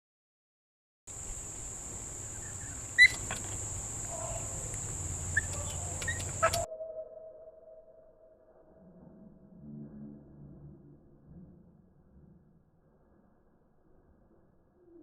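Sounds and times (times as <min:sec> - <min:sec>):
high insect drone: 0:01.1 - 0:06.7
bird chirps: 0:01.2 - 0:07.0
sharp click: 0:04.7 - 0:06.7.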